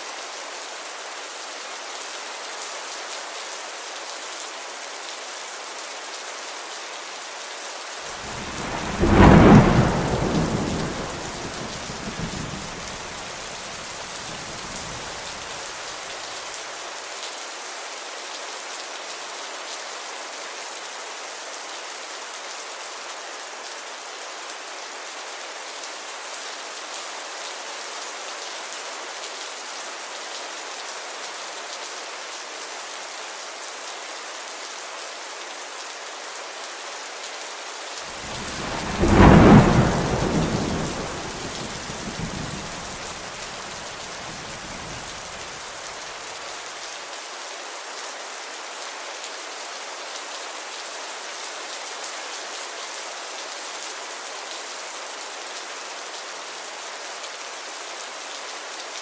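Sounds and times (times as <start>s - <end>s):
steady rain falling: 0.0s - 59.0s
thunderclap rumbling: 8.2s - 15.5s, 38.2s - 45.7s.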